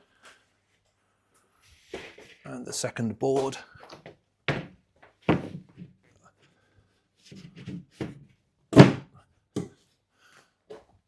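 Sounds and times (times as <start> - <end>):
wooden board knocks: 8.8 - 9.0
wooden board thunk: 8.8 - 9.0.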